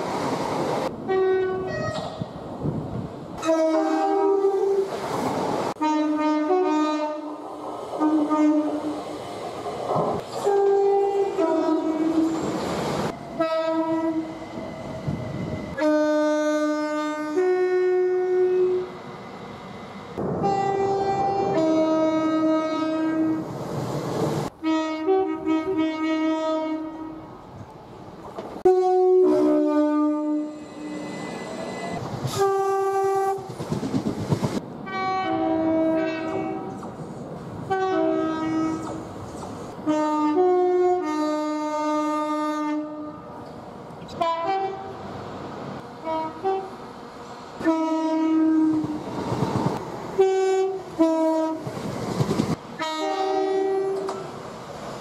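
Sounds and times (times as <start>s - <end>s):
trains passing rumble and clatter: 0.0s - 55.0s
two-tone train horn blasts: 1.1s - 2.1s, 3.4s - 4.8s, 5.8s - 7.3s, 8.0s - 8.9s, 10.4s - 12.4s, 13.4s - 14.3s, 15.7s - 18.9s, 20.4s - 23.4s, 24.6s - 27.2s, 28.6s - 33.5s, 34.8s - 36.8s, 37.7s - 39.0s, 39.8s - 43.3s, 44.1s - 44.9s, 46.0s - 46.8s, 47.6s - 49.0s, 50.2s - 51.7s, 52.8s - 54.2s.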